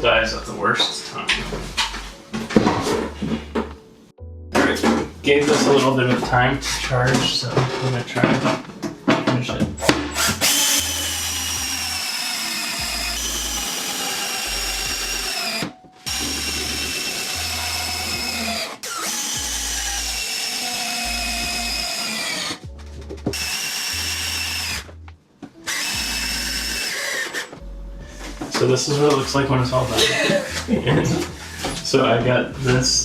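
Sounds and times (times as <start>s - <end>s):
cordless drill driving screws: 10.2s - 22.6s, 23.3s - 24.9s, 25.7s - 27.5s.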